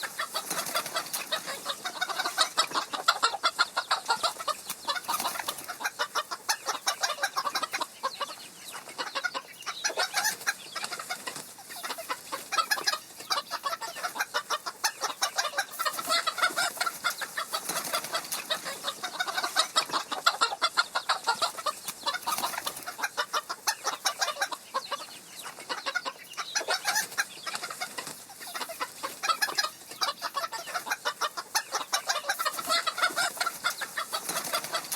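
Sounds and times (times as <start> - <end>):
chickens clucking: 0.0 - 34.9.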